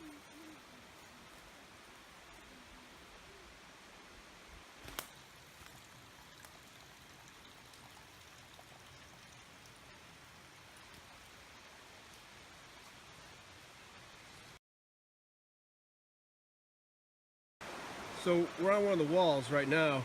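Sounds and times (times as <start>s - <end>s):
river rushing: 17.6s - 20.0s.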